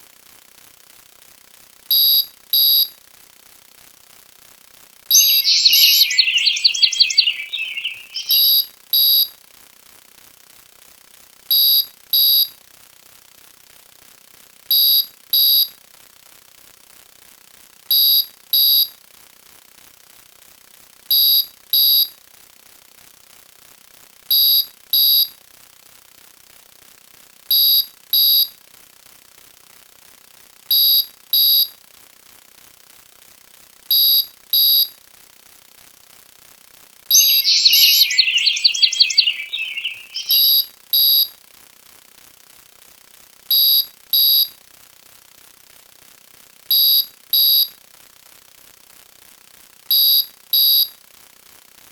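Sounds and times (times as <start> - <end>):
warbling electronic chirp: 5.1 - 8.5, 37.1 - 40.6.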